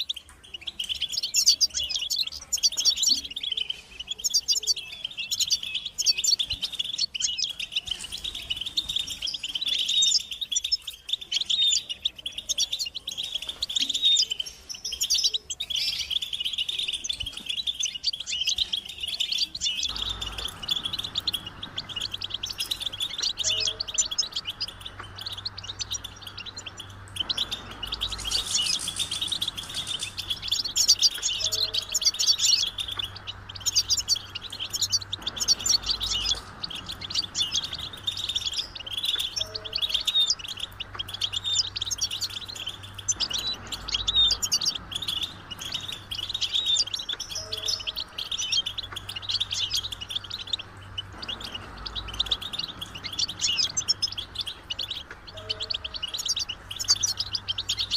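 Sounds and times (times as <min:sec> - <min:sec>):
goldfinches twittering and singing: 0:00.0 - 0:57.9
low hum: 0:19.9 - 0:57.9.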